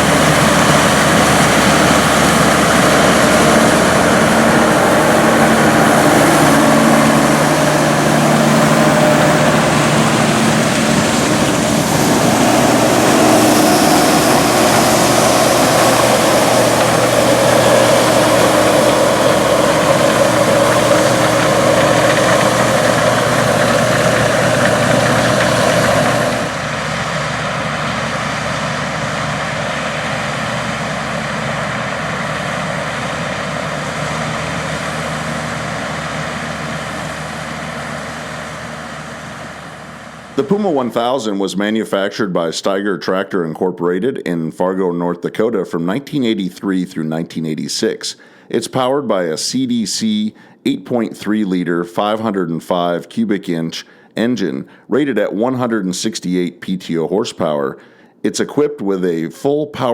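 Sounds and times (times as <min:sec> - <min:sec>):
tractor diesel engine running: 0:00.0 - 0:41.2.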